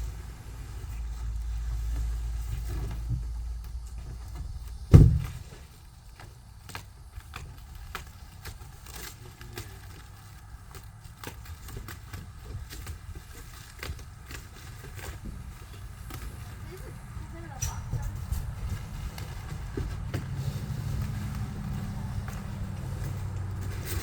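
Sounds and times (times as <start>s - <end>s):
light clicks and crackles: 0.4s - 24.0s
loud thump on box: 4.9s - 5.5s.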